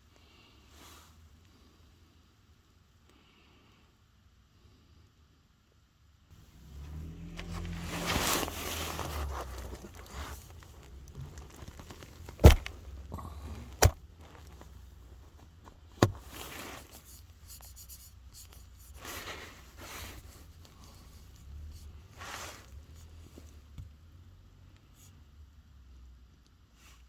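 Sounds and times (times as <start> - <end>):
rustling and handling noise: 6.3 - 24.0.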